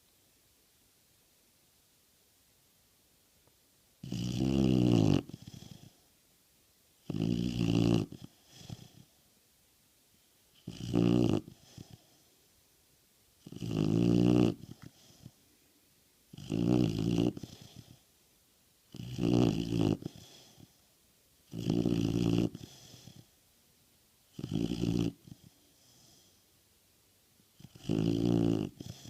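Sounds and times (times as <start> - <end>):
dog snoring: 4.0 - 6.1, 7.0 - 9.2, 10.5 - 12.3, 13.4 - 15.4, 16.3 - 18.1, 18.9 - 20.8, 21.4 - 23.4, 24.3 - 26.4, 27.6 - 29.0
faint breath: 11.5 - 12.5, 14.7 - 15.5, 17.4 - 18.2, 20.0 - 20.9, 22.6 - 23.4, 25.2 - 26.6.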